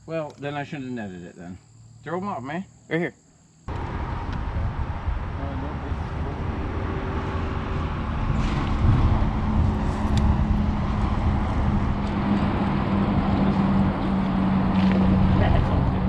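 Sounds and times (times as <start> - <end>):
boat motor humming: 3.7 - 16.0
wind noise: 3.7 - 16.0.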